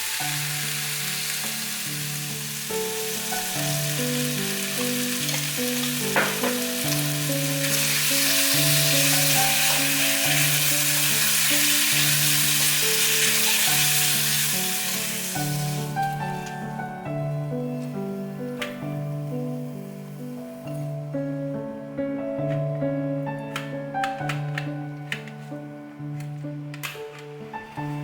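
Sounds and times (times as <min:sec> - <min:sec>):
food sizzling in a pan: 0:00.0 - 0:16.6
background music: 0:00.0 - 0:28.0
utensil knock: 0:06.1 - 0:06.7.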